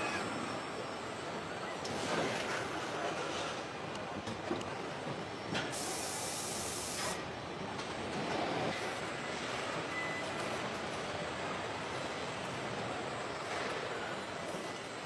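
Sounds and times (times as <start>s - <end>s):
factory machinery noise: 0.0s - 15.0s
hiss burst: 5.7s - 7.2s.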